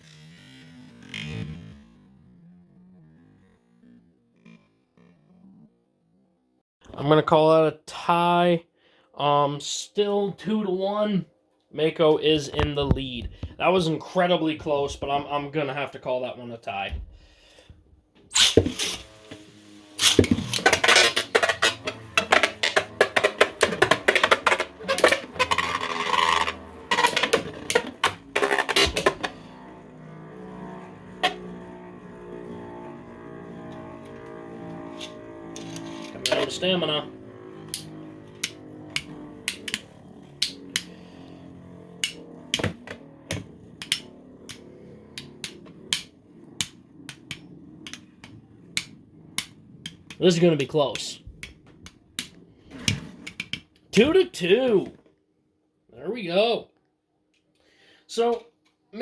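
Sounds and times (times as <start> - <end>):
rasping whir: 0.0 - 6.4, 17.2 - 54.1
spinning tops clattering: 20.0 - 29.4.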